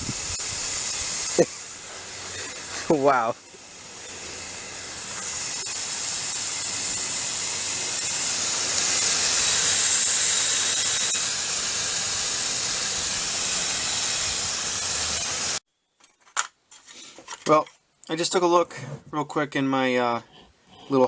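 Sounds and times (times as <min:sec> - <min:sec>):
pressure washer spraying: 0:00.0 - 0:15.6.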